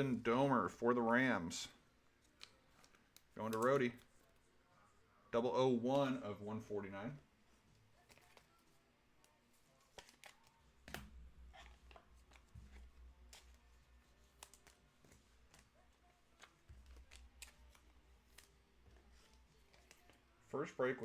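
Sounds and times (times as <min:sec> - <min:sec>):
trading cards handled: 0:02.0 - 0:04.5, 0:07.4 - 0:21.0.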